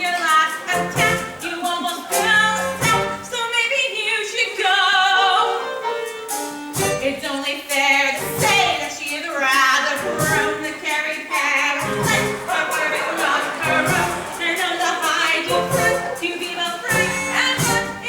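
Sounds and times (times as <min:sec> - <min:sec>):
light musical accompaniment: 0:00.0 - 0:03.6, 0:04.7 - 0:18.0
person singing: 0:09.8 - 0:18.0.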